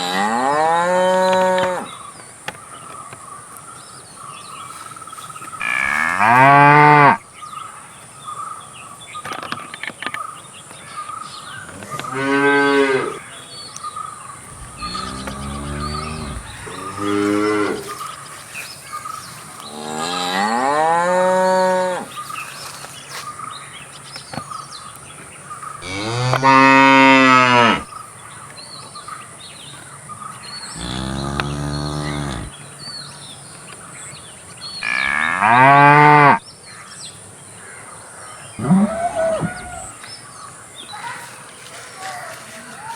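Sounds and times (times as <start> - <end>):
cows mooing: 0.0 - 1.9, 5.6 - 7.2, 11.8 - 13.2, 14.5 - 18.0, 19.7 - 22.1, 25.8 - 27.9, 30.8 - 32.5, 34.8 - 36.4, 38.6 - 39.9.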